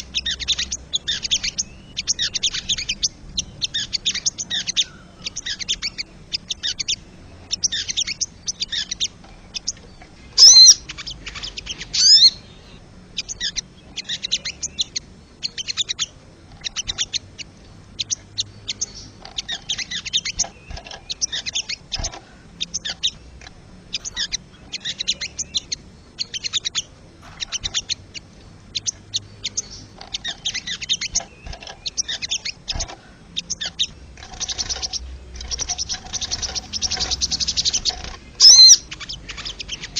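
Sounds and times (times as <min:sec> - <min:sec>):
bird chattering: 0:00.0 - 0:39.9
whistled bird call with sliding notes: 0:10.3 - 0:17.3, 0:28.8 - 0:39.9.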